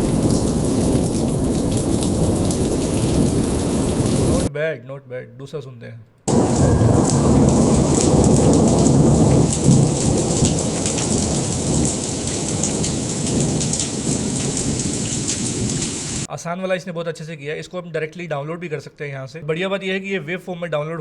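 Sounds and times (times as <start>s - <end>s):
heavy rain: 0.0s - 4.5s, 6.3s - 16.3s
low thunder rumble: 0.0s - 4.5s, 6.3s - 16.3s.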